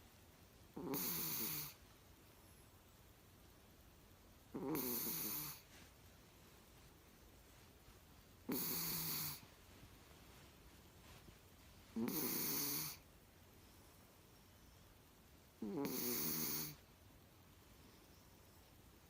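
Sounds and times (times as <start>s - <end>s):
cat snoring: 0.8s - 1.8s, 4.5s - 5.6s, 8.4s - 9.4s, 11.9s - 13.0s, 15.6s - 16.8s.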